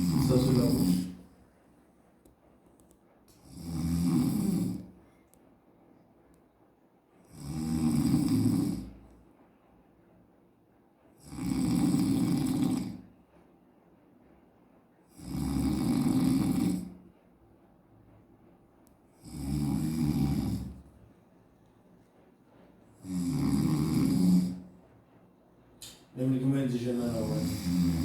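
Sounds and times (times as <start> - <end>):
man snoring loudly: 0.0 - 1.2, 3.4 - 4.9, 7.3 - 9.0, 11.2 - 13.0, 15.1 - 17.0, 19.2 - 20.8, 23.0 - 24.6, 27.0 - 28.0.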